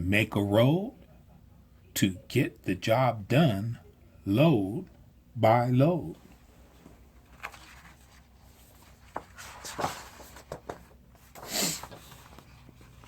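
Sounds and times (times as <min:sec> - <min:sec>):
paper rustle: 0:06.8 - 0:13.0.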